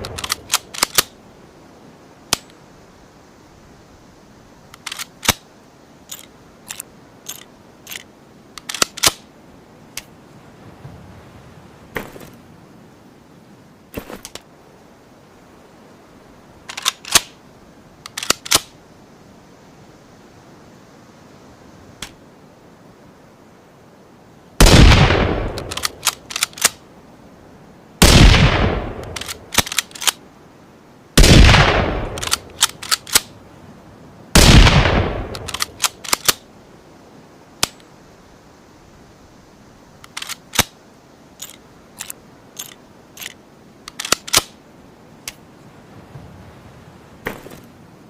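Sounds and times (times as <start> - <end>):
light clicks: 0.0 - 1.1, 4.7 - 5.4, 25.5 - 26.8, 32.0 - 33.3, 35.3 - 36.4, 40.0 - 40.8
rifle bolt metallic clicks: 0.0 - 1.1, 4.7 - 5.4, 6.1 - 9.2, 16.7 - 17.3, 18.0 - 18.7, 25.5 - 26.8, 29.0 - 30.2, 32.0 - 33.3, 35.2 - 36.4, 40.0 - 40.8, 41.4 - 44.6
rifle shots echoing: 24.6 - 25.8, 28.0 - 29.8, 31.2 - 32.4, 34.4 - 36.4.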